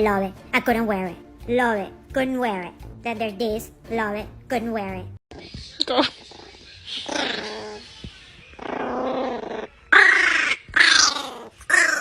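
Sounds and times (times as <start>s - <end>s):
small dog growling: 5.4s - 12.0s.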